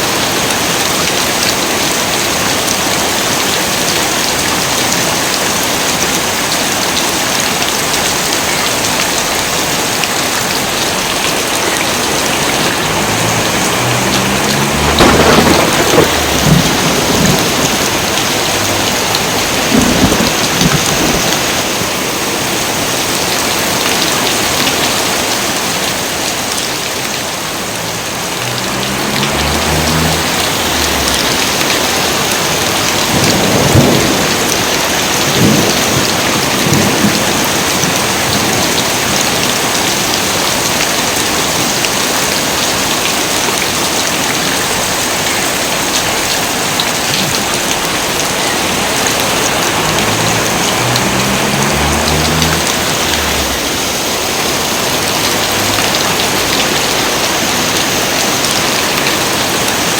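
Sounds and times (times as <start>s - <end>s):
heavy rain: 0.0s - 59.9s
thunder rumbling: 11.3s - 22.0s, 27.4s - 38.8s, 47.9s - 56.9s
sharp thunder cracks: 14.0s - 21.3s.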